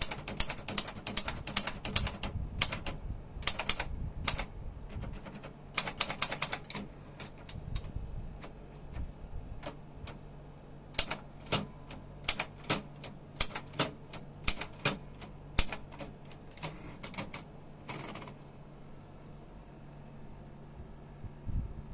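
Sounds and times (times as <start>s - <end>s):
typewriter key strikes: 0.0s - 6.9s, 11.0s - 18.3s.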